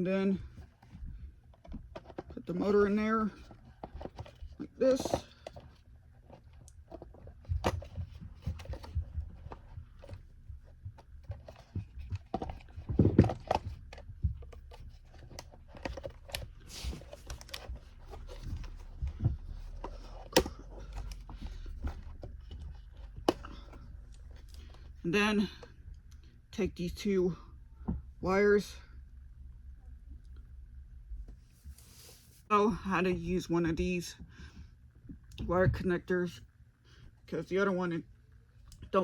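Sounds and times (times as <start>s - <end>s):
low steady hum: 0.0s - 39.0s
plastic parts clicking and knocking: 0.6s - 24.9s.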